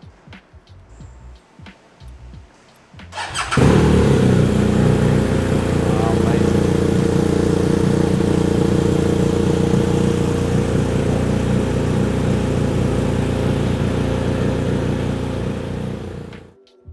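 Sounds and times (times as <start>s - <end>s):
motorcycle engine idling: 3.2s - 16.5s.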